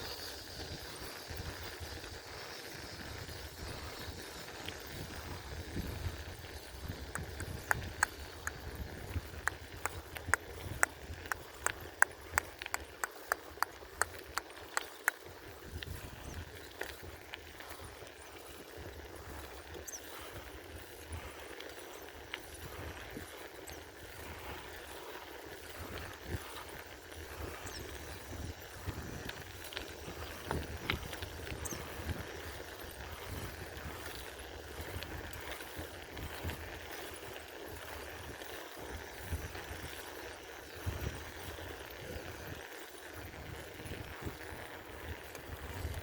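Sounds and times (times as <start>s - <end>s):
bicycle clicks and rattles: 0.0s - 46.0s
bicycle riding rumble: 0.0s - 46.0s.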